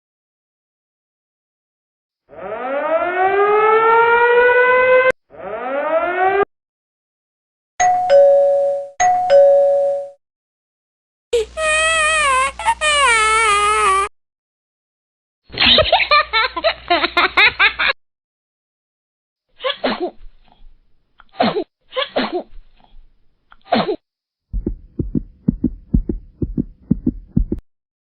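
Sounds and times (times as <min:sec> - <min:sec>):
pitched voice-like sound: 0:11.4 - 0:14.1.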